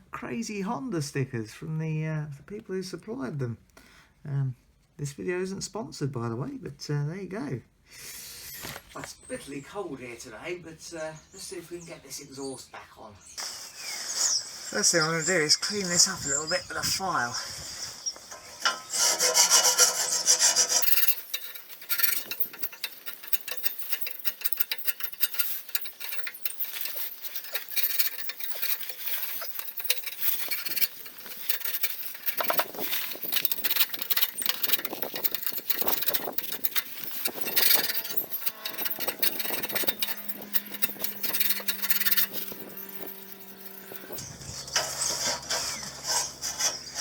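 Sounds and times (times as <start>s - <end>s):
hand file rasping on metal: 17.7s - 47.0s.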